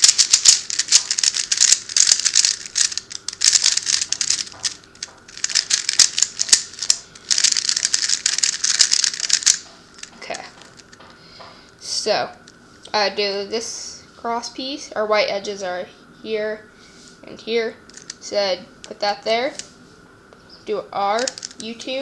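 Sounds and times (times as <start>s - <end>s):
puzzle cube layers clicking: 0.0s - 10.1s, 21.2s - 21.6s.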